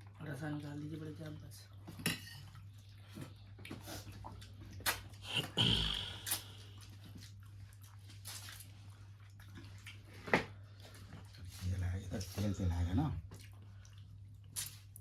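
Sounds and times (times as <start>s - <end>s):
utensils and dishes clinking: 2.0s - 2.5s.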